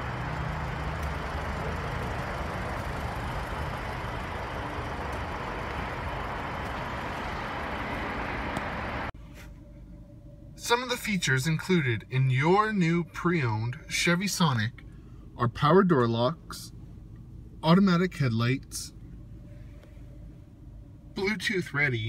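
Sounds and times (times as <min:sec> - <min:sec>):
road traffic rumble: 0:00.0 - 0:09.6.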